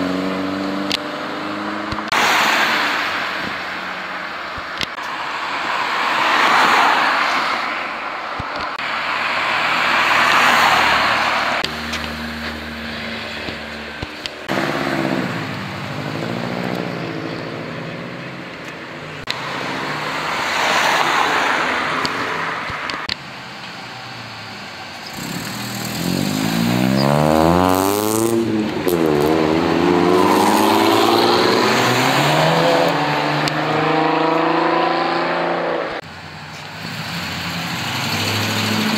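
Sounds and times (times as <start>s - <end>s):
cars driving past: 0.0s - 38.9s
engine revving: 9.4s - 18.2s, 25.1s - 36.0s, 36.8s - 38.9s.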